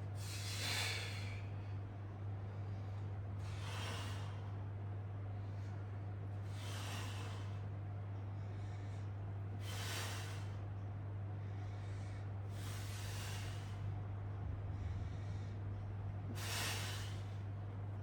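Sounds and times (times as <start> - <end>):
low electrical hum: 0.0 - 18.0
person breathing strongly: 0.2 - 1.5, 11.5 - 13.9, 16.3 - 17.4.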